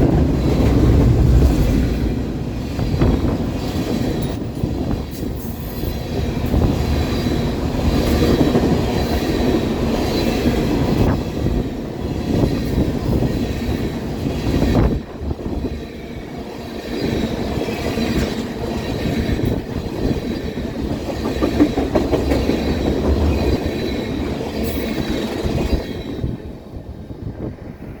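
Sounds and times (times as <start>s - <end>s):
wind noise on microphone: 0.0s - 28.0s
train wheels knocking over rail joints: 20.8s - 24.0s.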